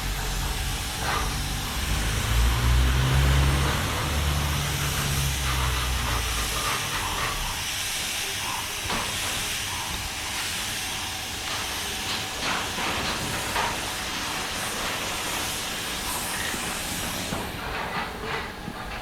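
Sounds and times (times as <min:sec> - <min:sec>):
spray gun hissing: 0:00.0 - 0:17.3.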